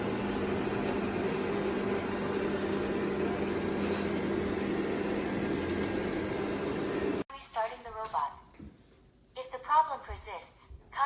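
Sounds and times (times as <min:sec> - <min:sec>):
machine hum: 0:00.0 - 0:07.2.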